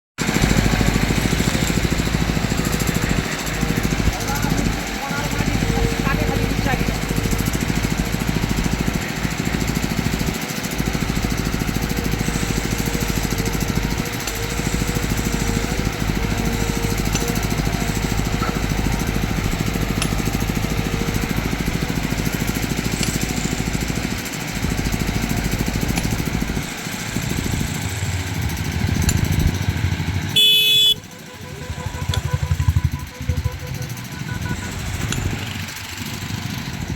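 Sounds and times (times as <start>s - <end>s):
diesel engine running: 0.2s - 36.9s
horn blast: 30.2s - 35.4s.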